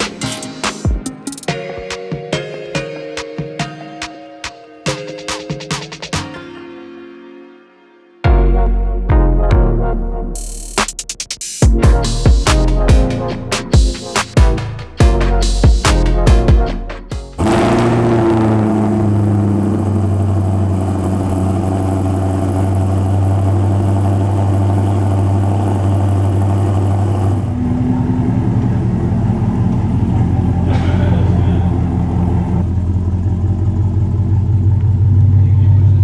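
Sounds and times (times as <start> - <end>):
electronic music with deep kicks: 0.0 - 4.1, 8.3 - 19.1
car engine running: 11.6 - 36.0.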